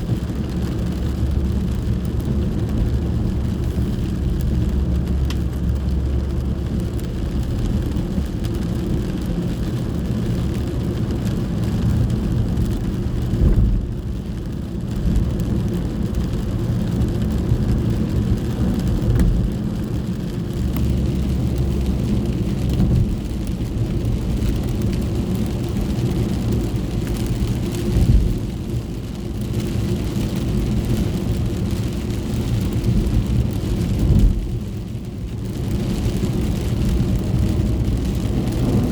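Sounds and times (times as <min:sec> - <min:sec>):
rain on car: 0:00.0 - 0:38.9
car cabin rumble: 0:11.4 - 0:14.3.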